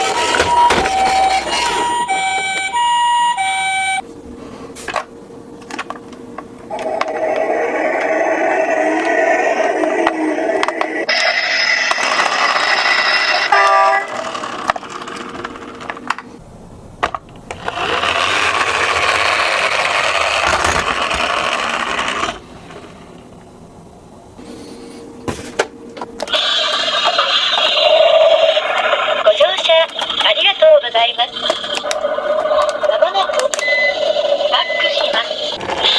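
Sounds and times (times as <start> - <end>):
toy electronic sound effects: 0.0 - 4.0, 26.3 - 35.9
warbling toy siren: 0.0 - 4.0, 6.7 - 14.4, 26.3 - 35.9.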